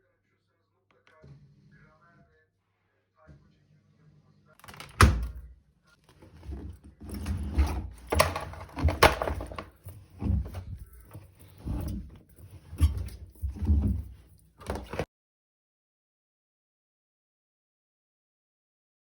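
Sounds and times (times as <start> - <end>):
household knocks and thuds: 6.2 - 15.1.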